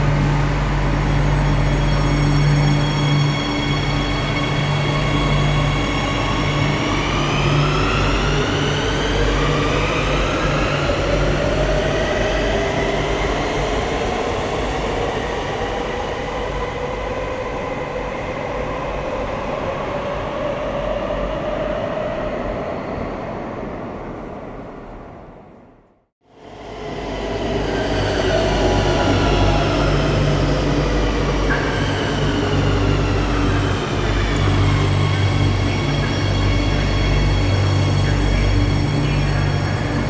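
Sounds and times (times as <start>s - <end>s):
electric train motors whining: 27.6s - 40.0s.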